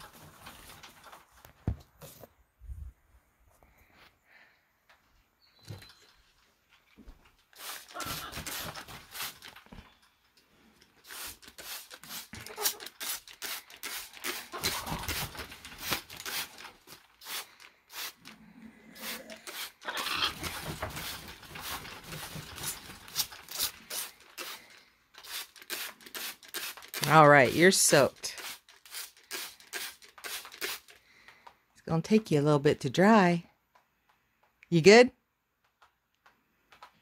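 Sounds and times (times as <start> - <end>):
parrot fluttering and shaking feathers: 0.0 - 2.2, 7.6 - 9.8, 11.0 - 18.2, 19.0 - 24.7.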